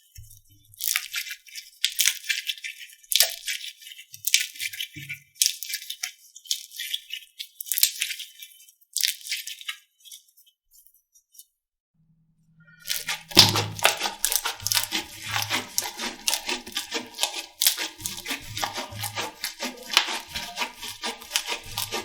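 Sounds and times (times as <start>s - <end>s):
slime crackling when squeezed: 12.9s - 22.0s.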